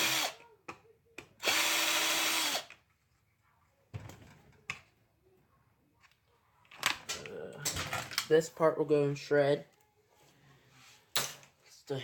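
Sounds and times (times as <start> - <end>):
power drill running: 0.0 - 0.4, 1.4 - 2.8.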